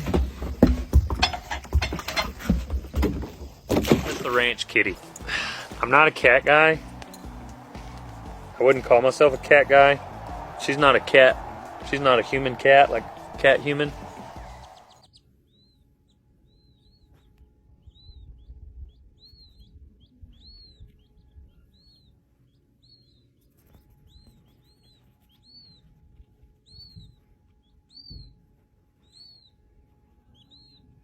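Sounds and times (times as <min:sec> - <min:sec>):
small bird chirping: 0:14.5 - 0:26.0, 0:26.6 - 0:28.4, 0:29.0 - 0:29.6, 0:30.2 - 0:31.0.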